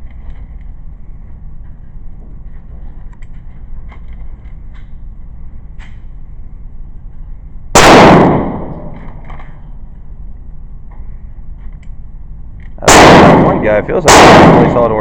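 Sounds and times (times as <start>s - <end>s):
steady low rumble: 0.0s - 15.0s
gunshot with echo: 7.8s - 9.1s, 12.8s - 15.0s.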